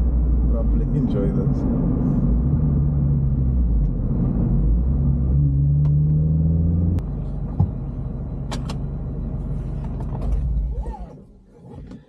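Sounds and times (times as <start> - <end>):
car engine accelerating: 0.0 - 11.5
road rumble: 0.0 - 12.0.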